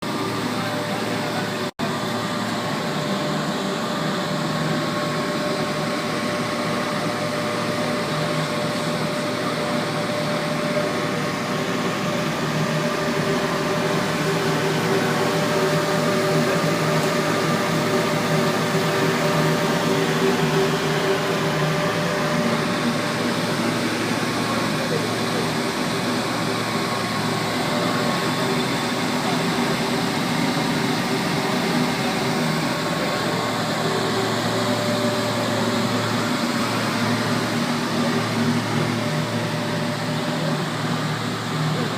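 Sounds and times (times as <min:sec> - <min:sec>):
burner blower fan running: 0:00.0 - 0:41.9.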